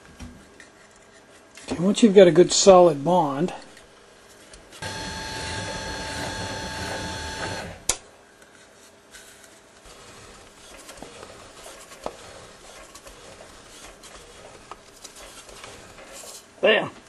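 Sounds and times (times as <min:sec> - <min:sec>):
machine whirring: 0:04.8 - 0:08.0.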